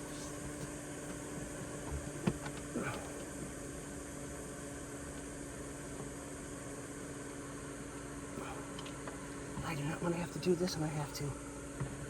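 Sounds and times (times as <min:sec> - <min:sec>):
steady background hum: 0:00.0 - 0:12.0.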